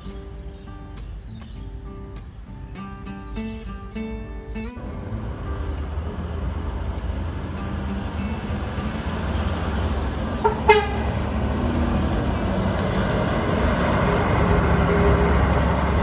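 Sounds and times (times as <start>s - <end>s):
bus engine rumbling: 4.5s - 16.0s
horn toots: 8.7s - 16.0s.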